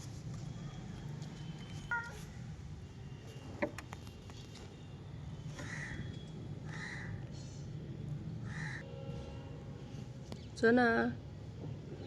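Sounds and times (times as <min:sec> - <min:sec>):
crow cawing: 0:05.6 - 0:06.1, 0:06.7 - 0:07.2, 0:08.5 - 0:08.8.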